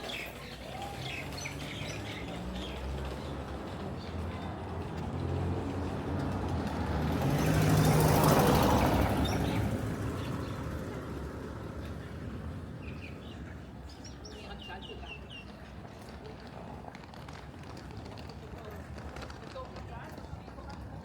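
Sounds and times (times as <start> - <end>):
motor vehicle passing by: 0.0 - 13.5.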